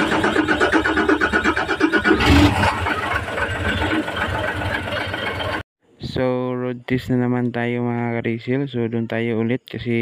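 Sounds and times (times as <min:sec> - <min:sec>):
diesel truck engine running: 0:00.0 - 0:05.6.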